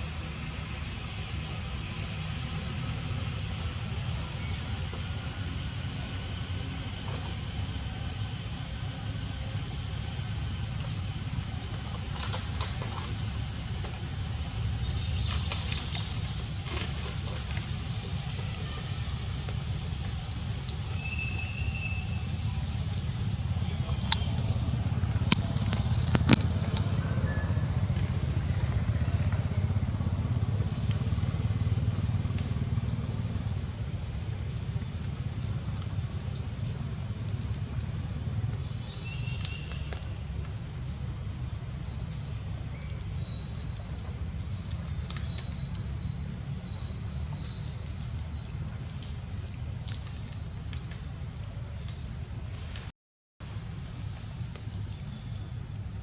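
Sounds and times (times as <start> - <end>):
low rumble: 2.4 - 39.0
scattered ticks: 9.6 - 52.2
faint high chirps: 20.9 - 22.9.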